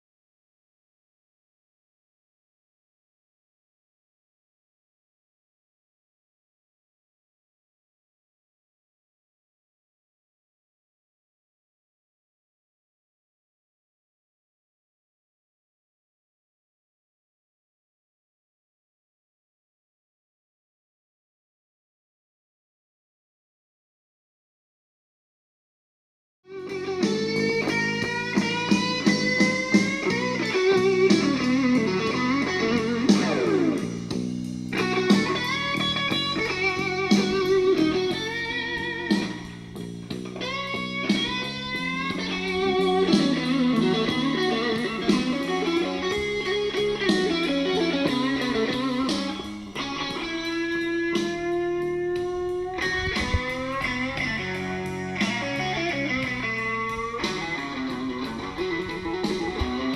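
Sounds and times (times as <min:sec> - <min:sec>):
electric guitar with bent notes: 0:26.5 - 0:59.9.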